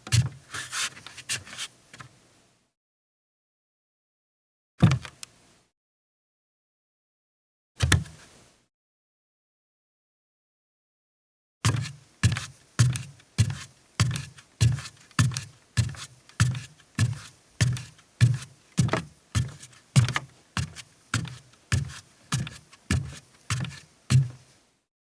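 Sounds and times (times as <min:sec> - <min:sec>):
bare footsteps on wooden deck: 0:11.8 - 0:24.4.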